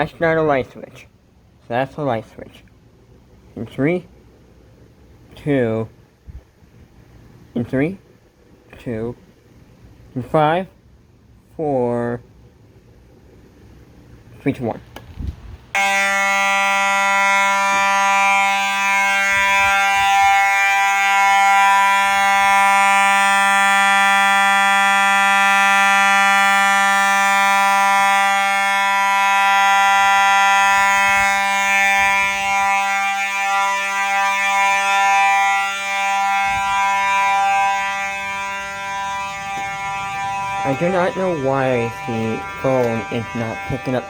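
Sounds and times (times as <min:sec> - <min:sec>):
fire alarm horn steady tone: 0:15.7 - 0:44.0.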